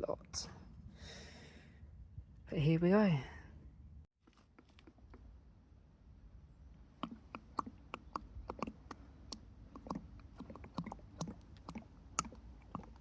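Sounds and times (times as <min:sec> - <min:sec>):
oil glugging from bottle: 0:06.9 - 0:13.0.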